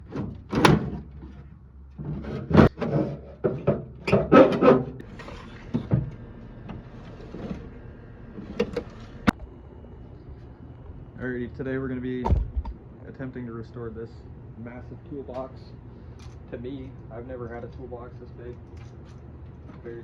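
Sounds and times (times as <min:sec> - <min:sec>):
metal drawers clattering: 0:00.0 - 0:07.8.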